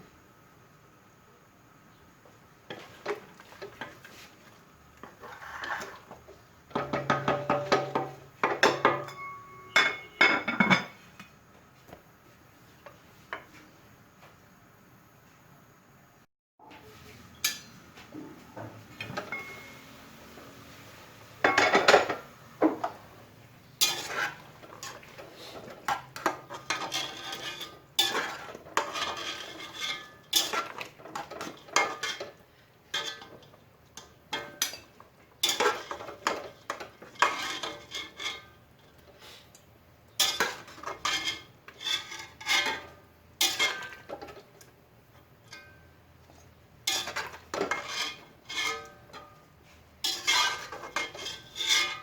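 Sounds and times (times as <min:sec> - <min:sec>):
metal utensils and cookware clattering: 0:02.7 - 0:04.3, 0:05.0 - 0:11.1, 0:16.7 - 0:18.4, 0:19.0 - 0:19.8, 0:21.4 - 0:23.0, 0:23.7 - 0:39.3, 0:40.1 - 0:52.0.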